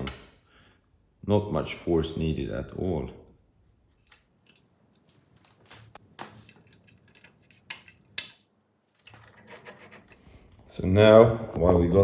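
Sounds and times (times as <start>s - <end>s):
small metallic clicks: 4.0s - 5.8s
light metal scraping: 9.0s - 10.4s.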